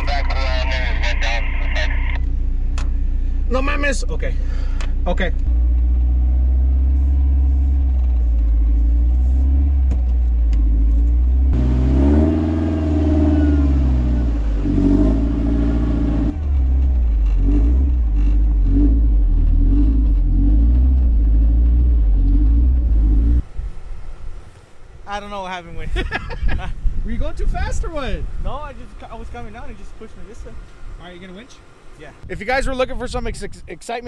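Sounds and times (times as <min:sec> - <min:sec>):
vehicle engine running and revving: 0:02.2 - 0:24.6.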